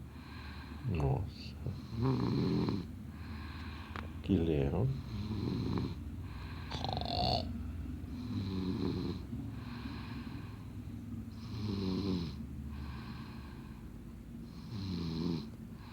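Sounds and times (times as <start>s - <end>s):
person snoring: 1.7s - 2.8s, 6.6s - 7.5s
rough breathing: 6.2s - 7.5s.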